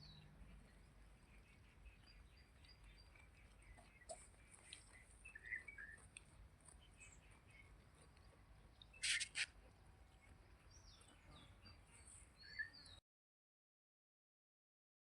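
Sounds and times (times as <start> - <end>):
faint bird chirps: 0.0 - 13.0
short sharp noises: 9.0 - 9.5.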